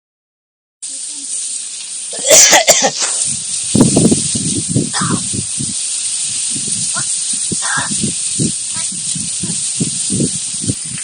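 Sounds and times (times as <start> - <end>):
steady hiss: 0.8 - 11.0
crow coughing: 2.2 - 3.1, 4.9 - 5.2.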